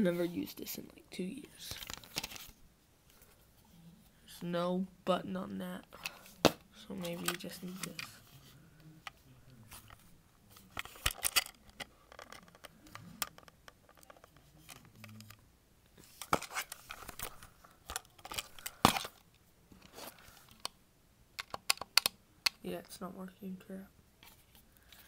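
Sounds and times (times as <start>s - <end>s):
handling rustles: 6.0s - 15.4s, 16.0s - 20.7s
plastic clicks: 21.4s - 22.6s.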